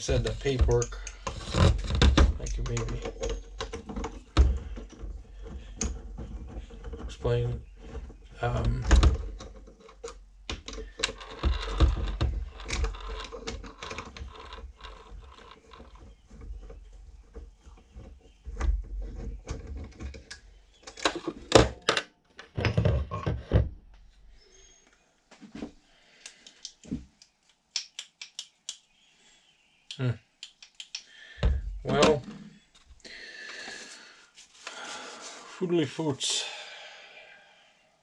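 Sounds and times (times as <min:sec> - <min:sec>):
metal parts clicking and clunking: 0:00.0 - 0:22.9.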